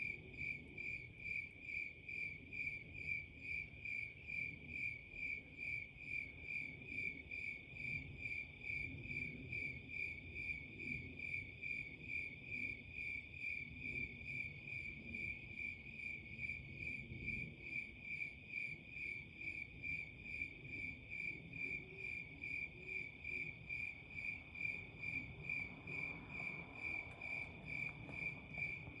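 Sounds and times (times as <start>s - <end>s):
cricket chirping: 0.0s - 29.0s
low background rumble: 22.2s - 29.0s.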